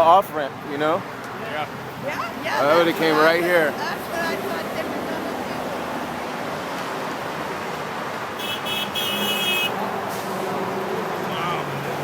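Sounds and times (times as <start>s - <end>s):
freeway traffic: 0.0s - 12.0s
vehicle horn toots: 8.4s - 9.8s.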